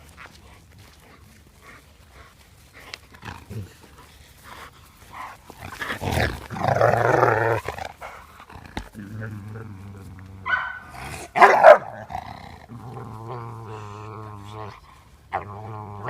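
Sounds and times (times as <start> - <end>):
dog growling and barking: 5.7 - 16.0.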